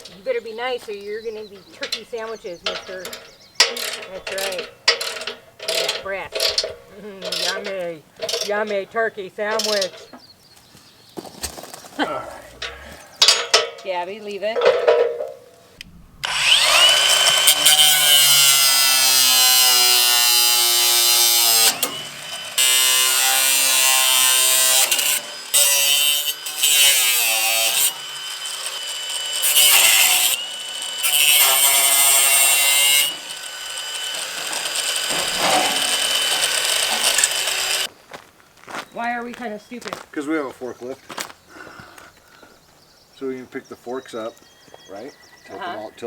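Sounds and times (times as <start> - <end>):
power drill running: 16.2 - 37.9.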